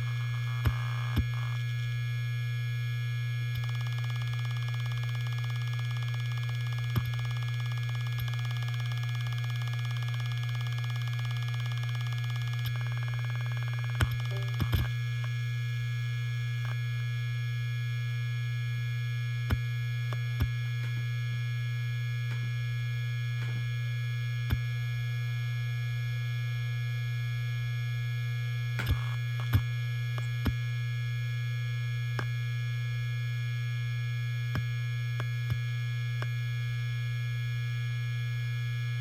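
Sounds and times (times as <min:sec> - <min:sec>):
hard disk drive humming: 0:00.0 - 0:39.0
high whine: 0:03.5 - 0:15.4.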